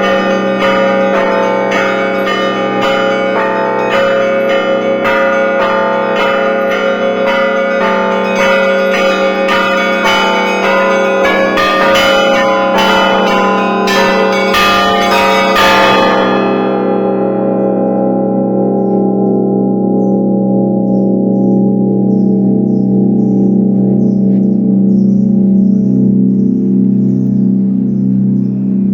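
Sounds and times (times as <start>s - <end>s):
small bells rapid strikes: 0.0s - 16.8s
deep hum of big bells: 0.0s - 28.9s.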